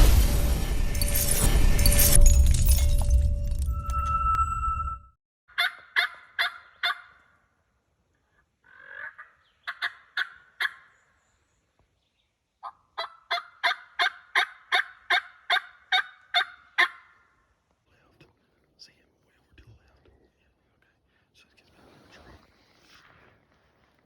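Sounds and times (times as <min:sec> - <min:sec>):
turkey yelps: 0:05.5 - 0:07.3, 0:08.7 - 0:11.0, 0:12.6 - 0:17.3.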